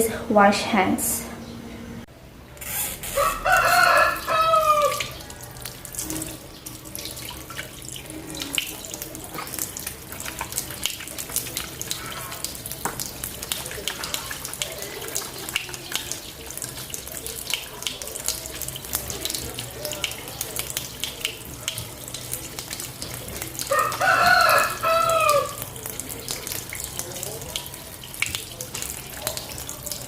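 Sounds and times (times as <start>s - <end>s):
tap water running into sink: 2.8s - 30.0s
rooster crowing: 3.0s - 5.6s, 23.7s - 25.7s
hands washing splashes: 3.0s - 30.0s.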